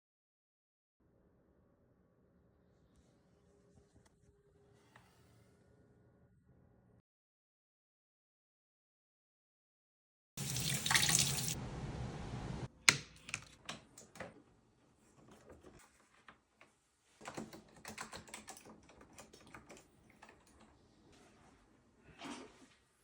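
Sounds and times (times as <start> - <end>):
tap running: 10.4 - 11.6.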